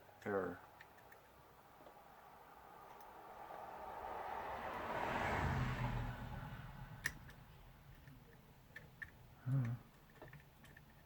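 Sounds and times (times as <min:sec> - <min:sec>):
small tools clicking: 0:07.0 - 0:11.0.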